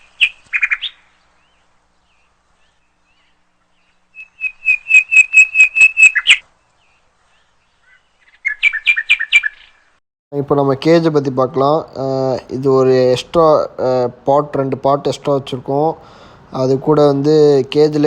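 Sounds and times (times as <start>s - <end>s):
finches chirping: 0.0s - 9.9s.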